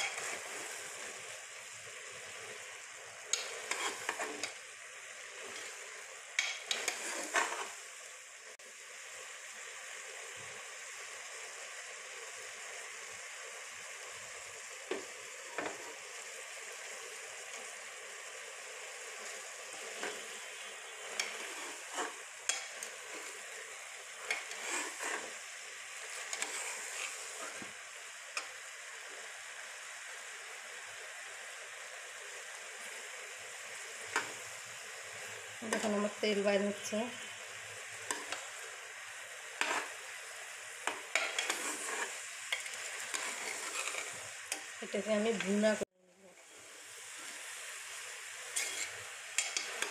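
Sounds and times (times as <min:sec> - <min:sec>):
spoon scraping and clattering in pan: 0:00.0 - 0:00.6, 0:03.3 - 0:04.6, 0:06.4 - 0:07.8, 0:19.2 - 0:20.4, 0:21.0 - 0:23.4, 0:24.2 - 0:25.4, 0:26.1 - 0:27.6, 0:39.6 - 0:40.0, 0:40.8 - 0:44.7, 0:48.5 - 0:49.9
chickpeas sizzling in hot oil: 0:00.0 - 0:49.9.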